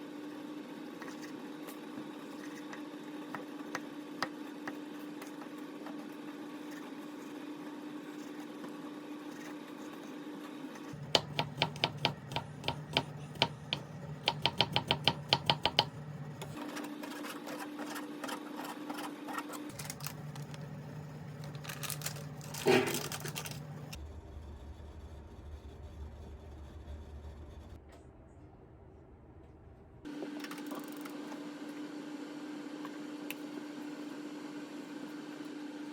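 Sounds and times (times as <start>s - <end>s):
knife chopping on cutting board: 11.0s - 15.9s.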